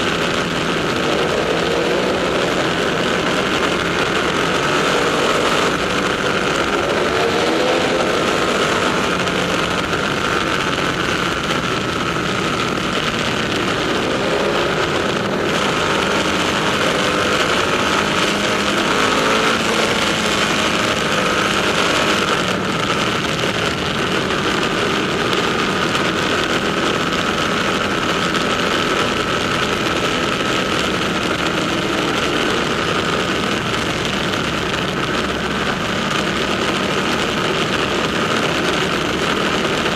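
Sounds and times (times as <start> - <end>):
motorcycle engines droning in tunnel: 0.0 - 39.9.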